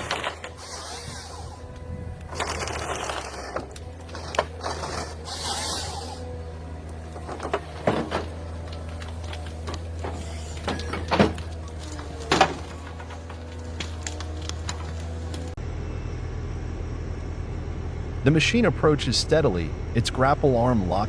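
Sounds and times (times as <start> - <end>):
hissing: 0.0 - 7.0
harvester engine humming: 0.0 - 21.0
knocks and cracks of wood: 6.9 - 15.6.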